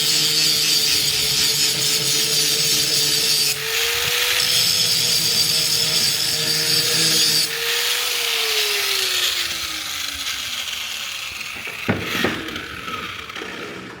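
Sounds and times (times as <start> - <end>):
power grinder whining: 0.0 - 14.0
sharp knocks: 11.6 - 12.7.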